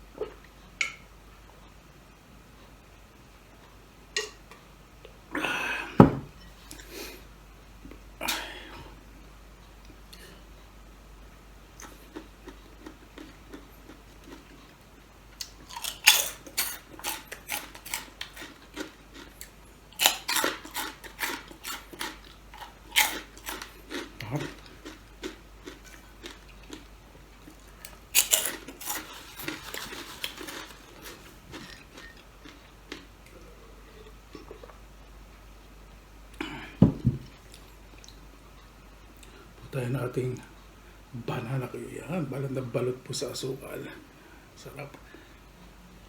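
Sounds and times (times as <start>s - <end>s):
soft chewing: 11.7s - 35.5s, 36.3s - 39.5s.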